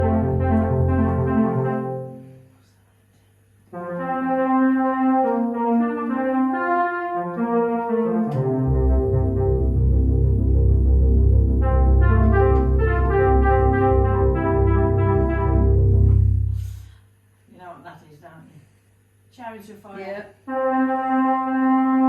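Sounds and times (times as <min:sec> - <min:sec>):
heavy bass line: 0:00.0 - 0:02.2, 0:07.9 - 0:16.9
electronic organ chords: 0:00.0 - 0:02.4, 0:03.7 - 0:16.6, 0:20.5 - 0:22.0.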